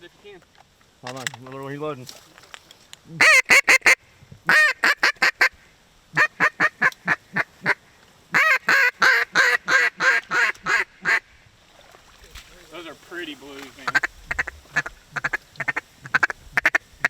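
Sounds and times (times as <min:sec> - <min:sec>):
duck call quacks: 0:03.2 - 0:05.6, 0:06.2 - 0:11.2, 0:13.8 - 0:16.8.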